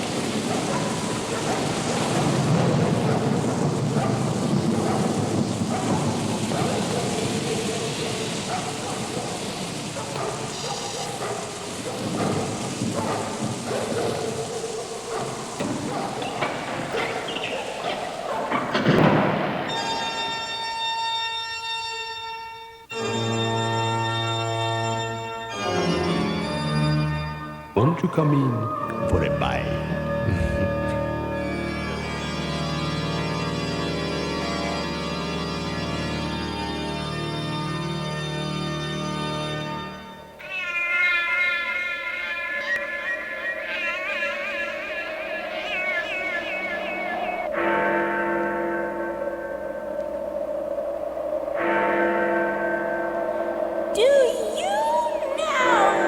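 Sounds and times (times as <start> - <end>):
steady noisy hiss: 0.0 - 56.0
organ playing spooky chords: 19.0 - 50.5.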